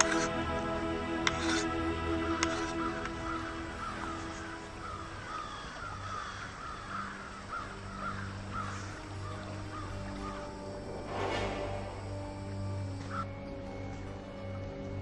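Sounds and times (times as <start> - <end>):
bird calling: 1.1 - 13.4
steady low hum: 7.7 - 13.4.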